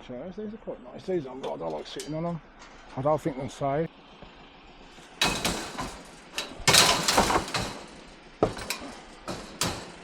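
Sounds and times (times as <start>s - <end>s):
furniture clattering and scraping: 5.2s - 10.0s.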